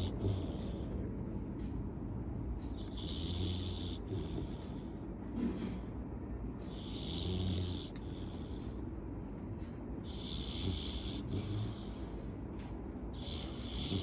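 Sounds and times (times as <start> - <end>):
dog snoring: 0.0 - 1.0, 2.7 - 5.0, 6.6 - 8.8, 10.0 - 14.0.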